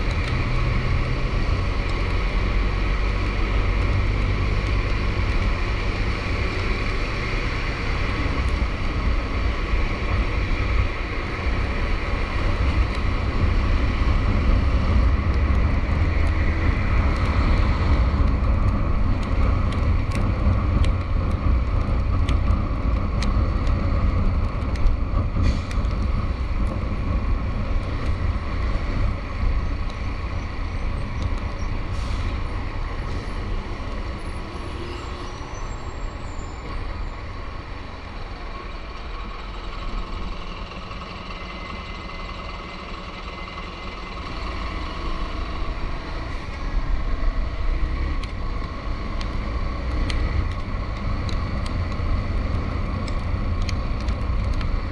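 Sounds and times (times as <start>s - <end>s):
heavy vehicle engine rumble: 0.0s - 54.9s.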